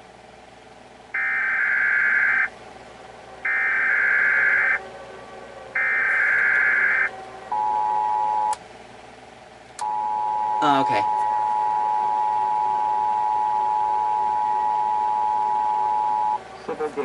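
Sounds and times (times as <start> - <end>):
harsh buzzing data bursts: 1.2 - 2.5, 3.5 - 4.8, 5.8 - 7.1
two-tone attention signal: 3.5 - 4.8, 5.8 - 8.6.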